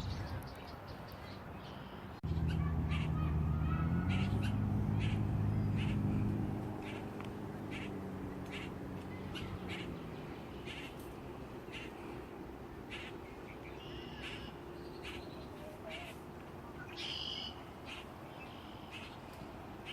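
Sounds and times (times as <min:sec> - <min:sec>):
harsh bird calls: 0:00.0 - 0:19.9
low steady hum: 0:01.5 - 0:19.8.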